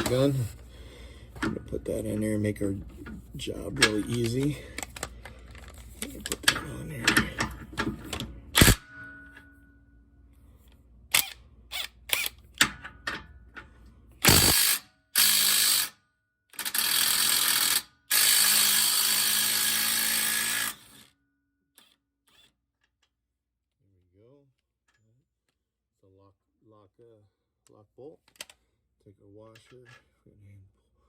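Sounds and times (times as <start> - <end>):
electric impact wrench hammering: 8.6 - 9.2, 14.2 - 16.0, 16.6 - 21.1
tool and socket clicks: 11.1 - 13.3.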